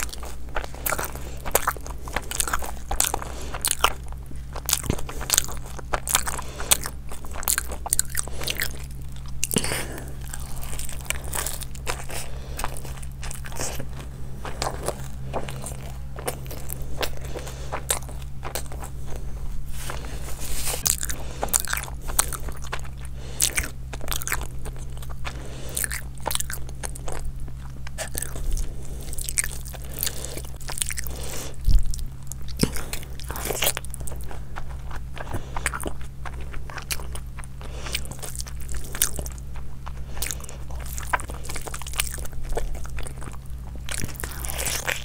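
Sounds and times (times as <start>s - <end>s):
person chewing crunchy food: 0.0s - 45.0s
steady low hum: 0.0s - 45.0s.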